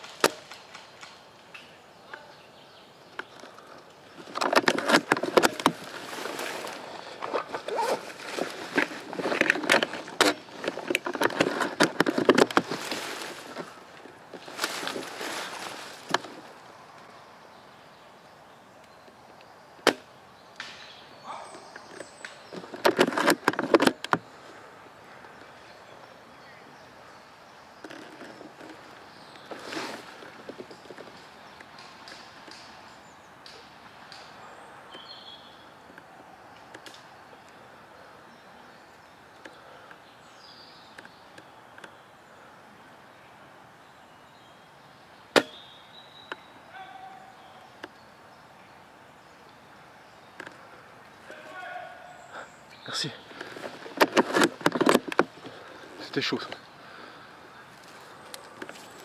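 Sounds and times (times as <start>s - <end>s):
bird chirp: 1.1s - 59.0s
rustling: 3.2s - 17.1s, 27.8s - 34.2s, 50.4s - 59.0s.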